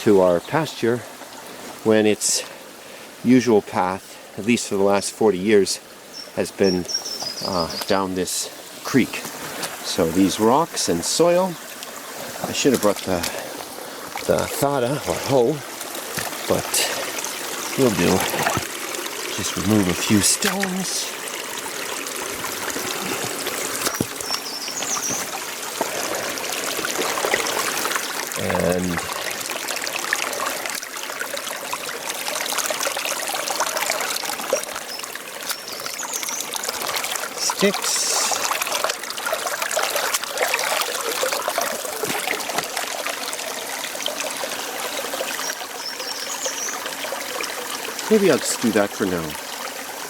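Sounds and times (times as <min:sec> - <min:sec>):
water trickling over stones: 0:00.0 - 0:50.0
bird chirping: 0:06.1 - 0:08.1, 0:23.9 - 0:25.3, 0:34.5 - 0:36.5, 0:45.4 - 0:46.8.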